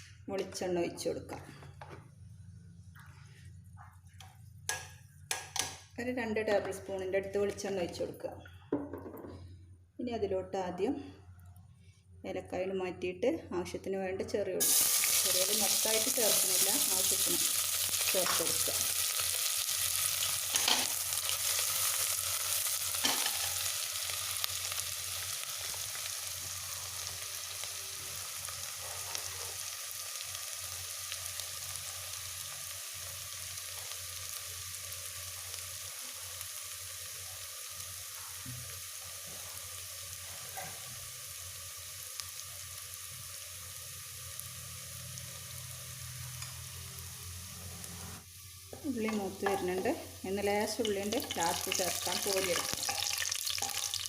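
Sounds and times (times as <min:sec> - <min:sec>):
shallots sizzling in oil: 0:06.6 - 0:08.0, 0:14.6 - 0:54.0.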